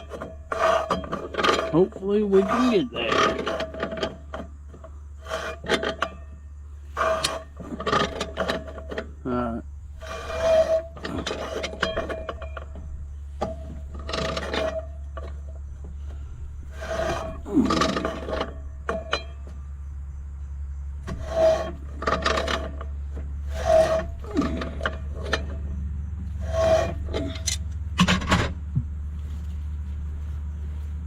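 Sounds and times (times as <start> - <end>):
hand tool rasping on metal: 0.0 - 4.4, 5.2 - 9.1, 9.9 - 19.4, 21.0 - 25.6, 26.3 - 27.6
steady low hum: 0.0 - 31.0.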